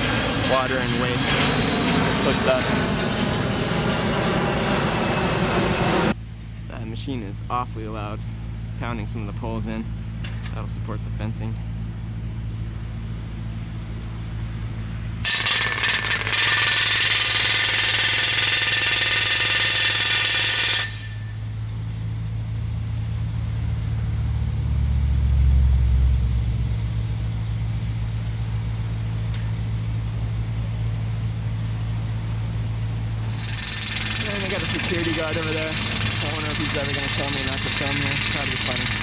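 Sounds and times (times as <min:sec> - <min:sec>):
machine engine running: 0:00.0 - 0:39.0
post driver hammering: 0:33.3 - 0:39.0.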